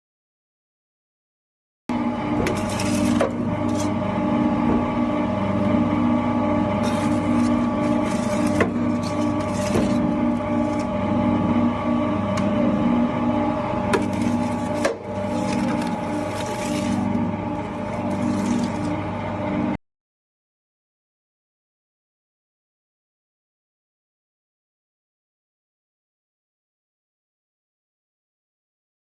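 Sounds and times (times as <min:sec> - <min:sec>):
machine humming: 0:01.9 - 0:19.8.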